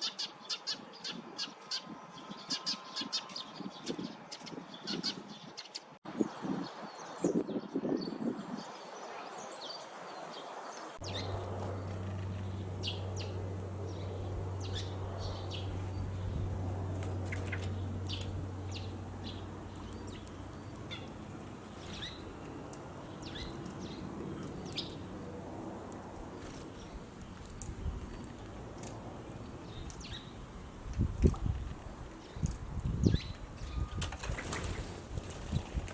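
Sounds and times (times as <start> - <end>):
steady low hum: 11.0 - 27.2
sparrows chirping: 11.0 - 35.4.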